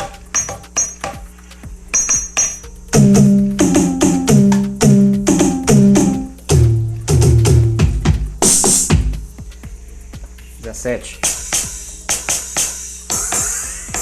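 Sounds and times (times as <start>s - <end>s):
loud pitched electronic drum hits: 2.0s - 9.3s.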